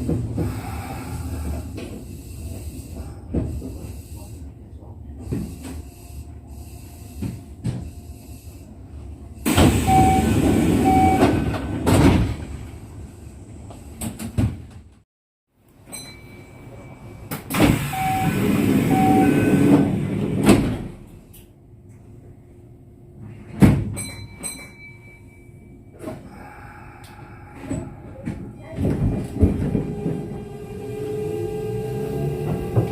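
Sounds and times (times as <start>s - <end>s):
train doors sliding: 0.0s - 4.3s, 5.2s - 15.0s, 17.2s - 21.5s, 27.6s - 32.9s
short beeps: 9.8s - 11.4s, 17.9s - 19.7s.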